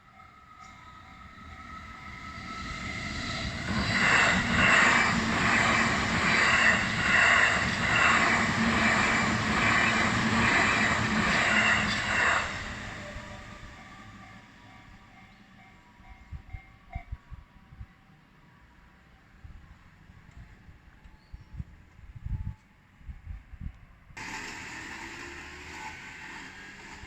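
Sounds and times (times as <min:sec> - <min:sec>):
faint crossing warning bell: 0:00.0 - 0:04.8, 0:11.6 - 0:19.4
train rumbling: 0:00.0 - 0:17.3, 0:24.2 - 0:27.0
wheels clattering over rail joints: 0:24.2 - 0:27.0.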